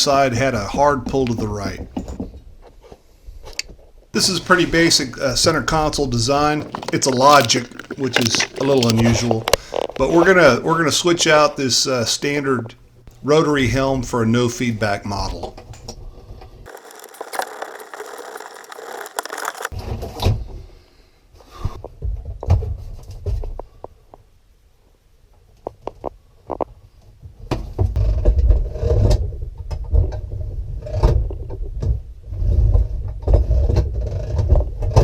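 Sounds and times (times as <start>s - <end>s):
metal scrapes clicks and rattles: 4.2s - 10.1s, 16.7s - 19.8s.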